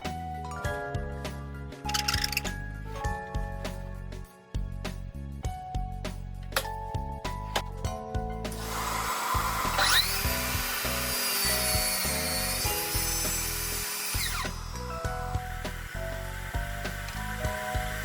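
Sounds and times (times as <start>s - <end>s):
background music: 0.0s - 18.0s
power tool motor whine: 8.6s - 18.0s.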